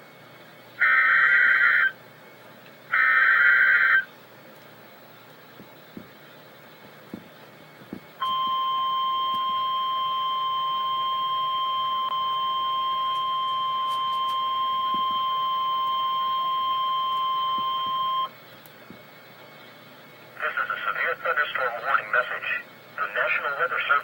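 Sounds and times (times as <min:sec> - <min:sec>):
steady piercing alert tone: 0:07.9 - 0:19.1.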